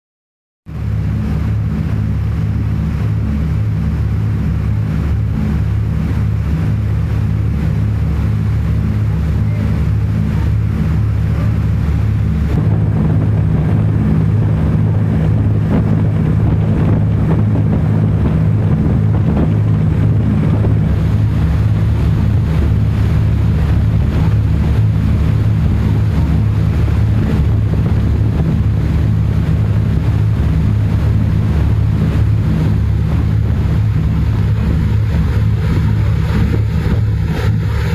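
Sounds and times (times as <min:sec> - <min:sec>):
ferry engine drone: 0:00.7 - 0:37.9
rushing water: 0:00.7 - 0:37.9
wind buffeting microphone: 0:00.7 - 0:37.9.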